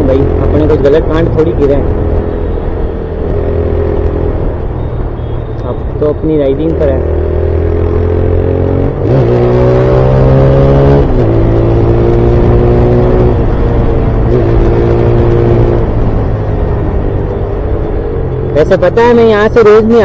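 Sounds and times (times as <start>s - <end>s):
motorcycle engine accelerating: 6.7s - 18.9s.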